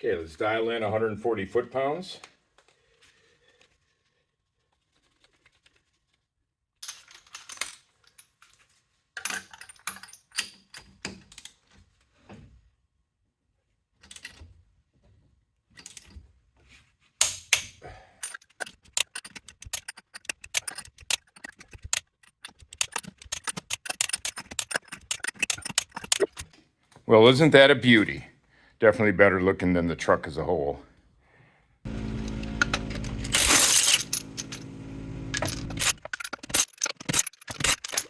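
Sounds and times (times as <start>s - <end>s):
torque wrench rapid clicking: 18.8s - 26.4s.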